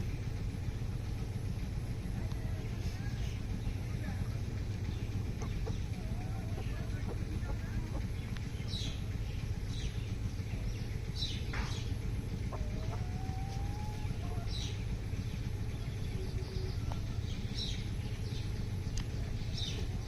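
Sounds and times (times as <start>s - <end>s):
low background rumble: 0.0s - 20.0s
chicken clucking: 4.2s - 8.5s, 12.3s - 14.7s.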